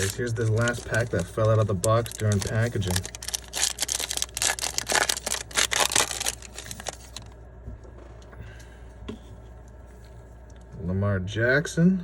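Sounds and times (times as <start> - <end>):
foil wrapper tearing and crinkling: 0.0 - 7.3.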